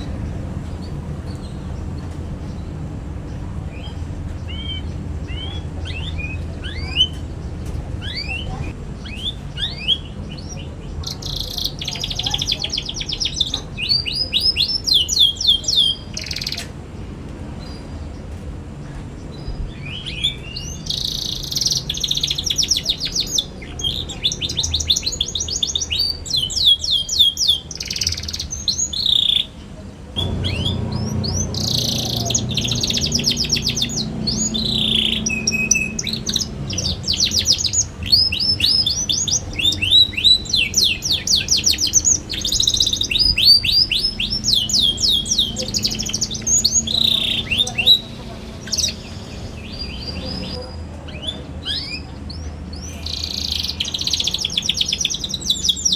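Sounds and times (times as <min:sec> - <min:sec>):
canary singing: 0:00.0 - 0:16.7, 0:30.2 - 0:55.9.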